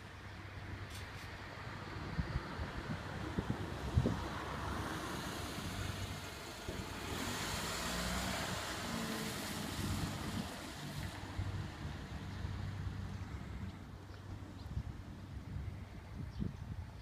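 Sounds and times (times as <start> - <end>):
vehicle passing close by: 1.7 - 13.7.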